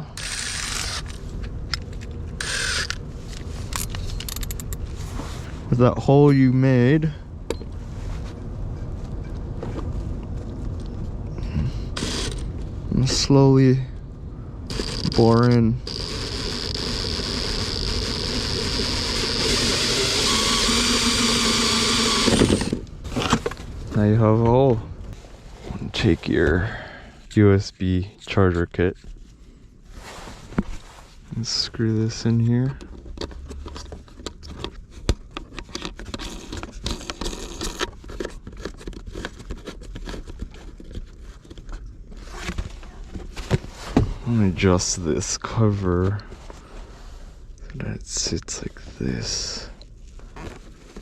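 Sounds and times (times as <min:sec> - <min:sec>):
power drill with hole saw: 0:00.1 - 0:01.1, 0:02.4 - 0:03.0, 0:12.0 - 0:12.4, 0:14.7 - 0:15.2, 0:15.8 - 0:22.8.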